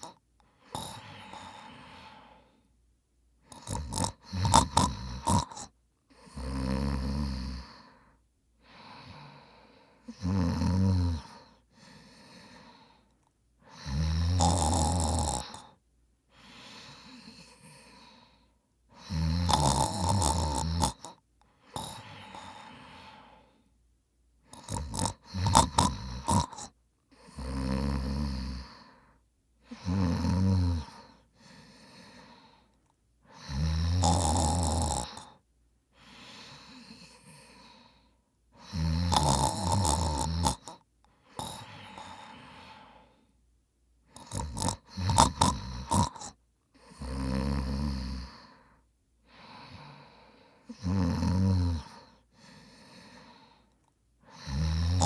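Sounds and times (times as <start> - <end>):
man snoring heavily: 0.0 - 2.4, 3.5 - 8.0, 8.7 - 13.0, 13.6 - 15.7, 19.0 - 23.4, 24.5 - 29.0, 29.7 - 32.6, 33.3 - 35.4, 38.6 - 43.2, 44.1 - 48.7, 49.3 - 55.0
quiet breath: 0.0 - 10.3, 11.0 - 14.2, 15.3 - 19.4, 20.9 - 33.8, 34.8 - 55.0.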